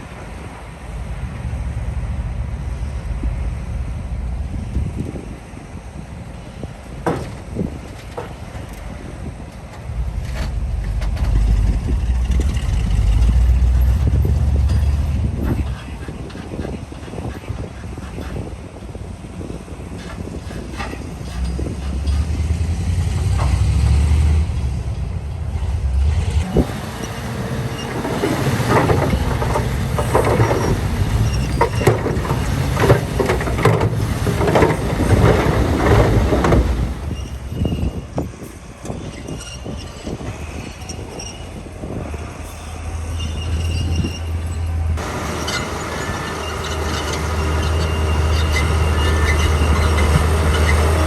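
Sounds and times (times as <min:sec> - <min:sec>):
bulldozer engine humming: 0:00.0 - 0:37.6, 0:42.6 - 0:51.0
metallic clanking and scraping: 0:26.4 - 0:37.9, 0:43.3 - 0:51.0.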